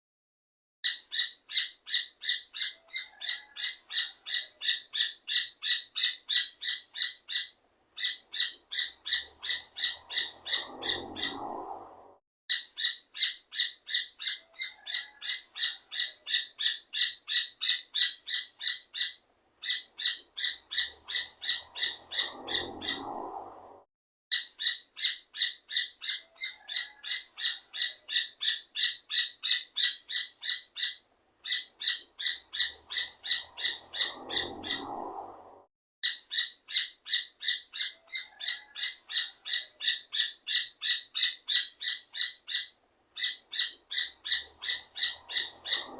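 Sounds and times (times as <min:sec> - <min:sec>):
low rough sound: 0:10.0 - 0:12.2, 0:21.7 - 0:23.9, 0:33.8 - 0:35.7
bird singing ringing notes: 0:24.4 - 0:35.0, 0:36.0 - 0:45.9.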